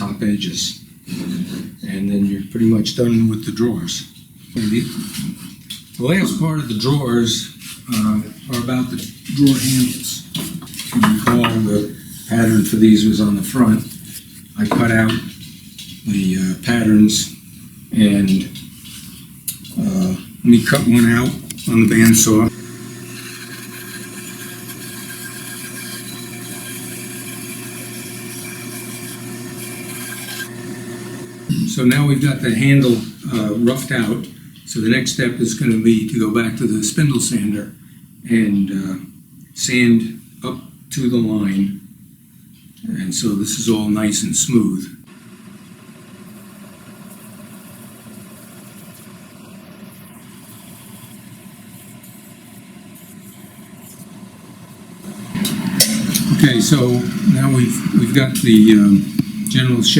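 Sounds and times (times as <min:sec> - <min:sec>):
spindle sander motor hum: 0:20.8 - 0:31.6, 0:45.1 - 0:59.9
bandsaw cutting wood: 0:21.5 - 0:31.6, 0:55.0 - 0:59.9.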